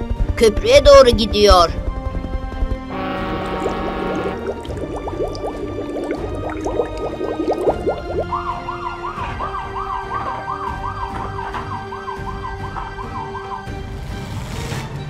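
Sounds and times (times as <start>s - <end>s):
low steady rumble: 2.9s - 8.2s
cartoon siren wailing: 3.0s - 4.4s, 8.0s - 13.6s.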